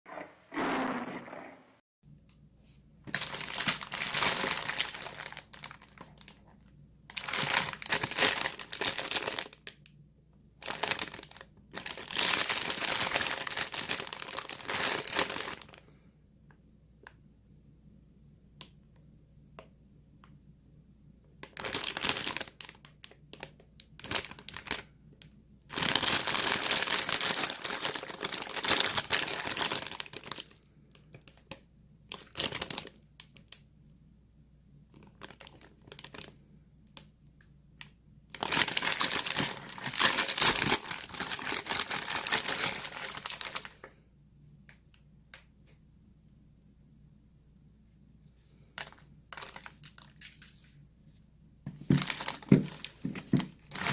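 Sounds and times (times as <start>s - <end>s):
plastic packaging crumpling: 3.1s - 9.8s, 10.6s - 15.8s, 21.4s - 24.9s, 25.7s - 31.4s, 32.1s - 33.5s, 35.0s - 36.4s, 38.3s - 43.9s, 48.6s - 50.7s, 51.7s - 53.9s.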